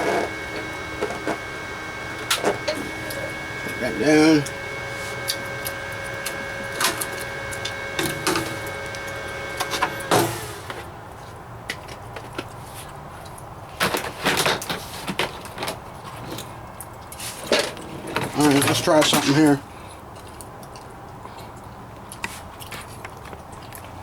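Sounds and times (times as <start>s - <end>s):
machine hum: 0.0s - 11.2s.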